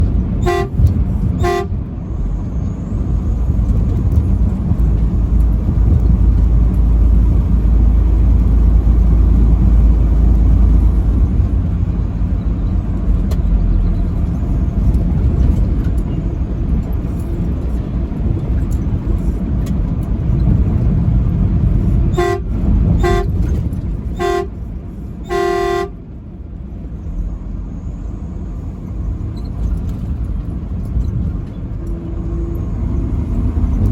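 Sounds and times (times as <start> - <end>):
vehicle rumble: 0.0 - 33.9
truck horn toots: 0.4 - 1.9, 22.1 - 24.6, 25.2 - 26.0.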